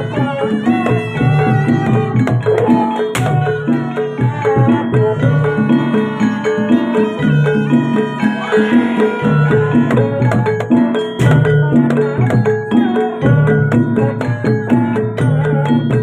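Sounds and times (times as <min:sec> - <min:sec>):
hand drums beating: 0:00.0 - 0:16.0
struck metal gamelan notes: 0:00.0 - 0:16.0.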